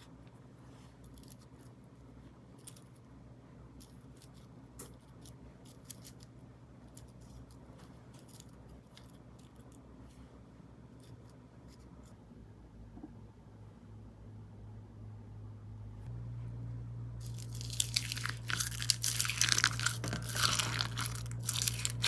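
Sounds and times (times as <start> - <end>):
low steady hum: 0.0 - 22.0
slime clicking and crackling: 17.2 - 22.0.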